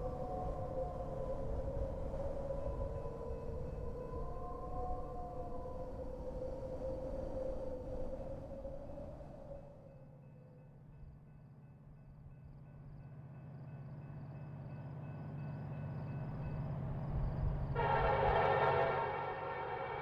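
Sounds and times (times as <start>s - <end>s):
loud horn-like chord: 17.8s - 20.0s.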